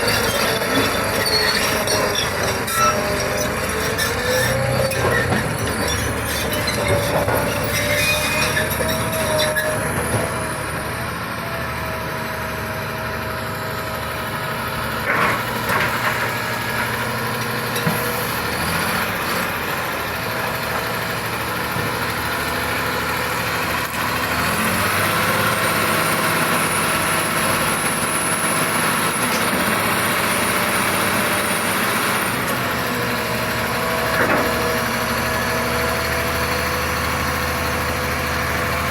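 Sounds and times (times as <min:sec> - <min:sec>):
metallic squealing: 0:00.0 - 0:09.9
bulldozer engine whine: 0:00.0 - 0:38.9.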